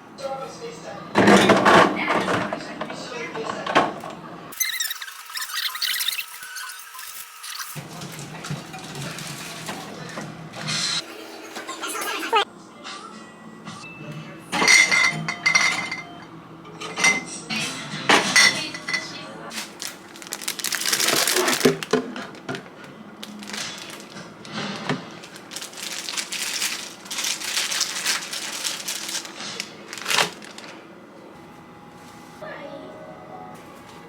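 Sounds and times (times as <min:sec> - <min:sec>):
rustling and handling noise: 0:07.5 - 0:10.8, 0:18.7 - 0:32.4
glass items clinking: 0:14.5 - 0:17.3, 0:18.1 - 0:22.6, 0:24.8 - 0:30.6.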